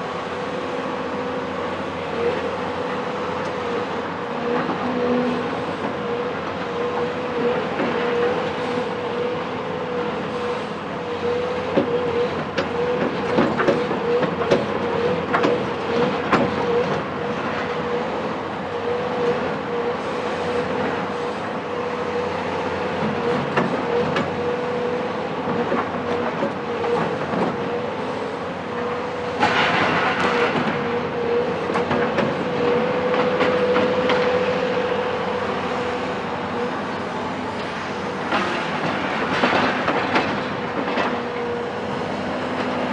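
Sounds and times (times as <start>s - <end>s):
excavator diesel engine working: 0.0s - 42.9s.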